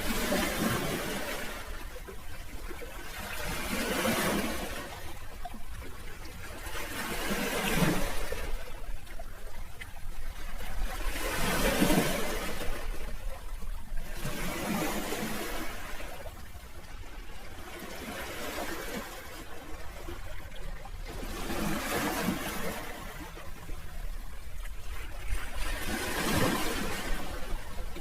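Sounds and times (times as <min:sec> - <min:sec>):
sea waves washing onto shore: 0:00.0 - 0:28.0.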